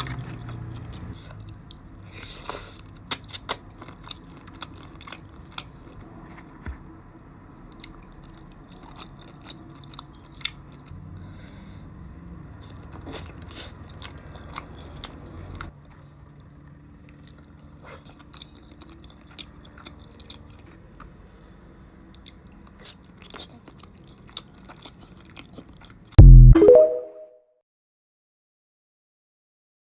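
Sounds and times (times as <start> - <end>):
chewing and crunching food: 0.0 - 7.0, 7.6 - 26.2
loud pitched sound: 26.2 - 27.3.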